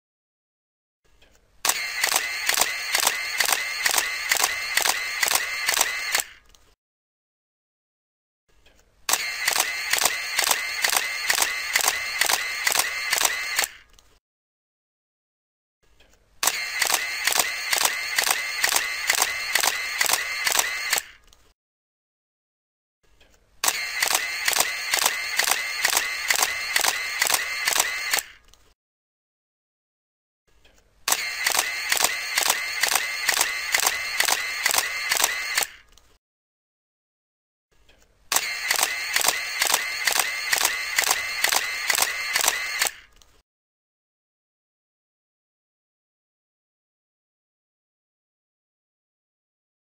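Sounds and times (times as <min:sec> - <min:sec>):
camera whir: 0:01.2 - 0:06.7, 0:08.7 - 0:14.2, 0:16.4 - 0:21.6, 0:23.6 - 0:28.8, 0:31.0 - 0:36.2, 0:38.0 - 0:43.4
camera shutter burst: 0:01.6 - 0:06.4, 0:09.1 - 0:13.9, 0:16.4 - 0:21.2, 0:23.6 - 0:28.4, 0:31.1 - 0:35.9, 0:38.3 - 0:43.2.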